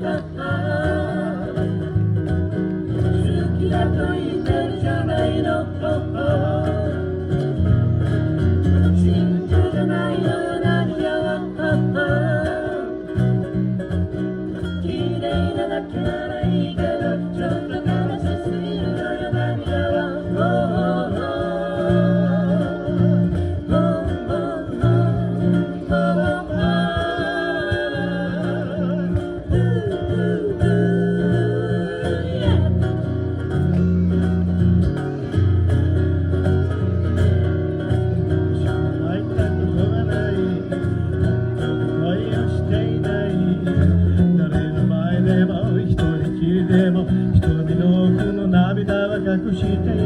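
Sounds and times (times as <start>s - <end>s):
acoustic guitar strumming: 0.0s - 50.0s.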